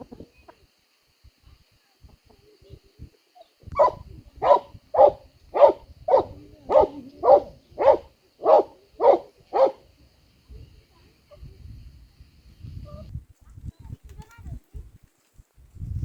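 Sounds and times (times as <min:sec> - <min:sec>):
dog barking: 0:03.8 - 0:09.8.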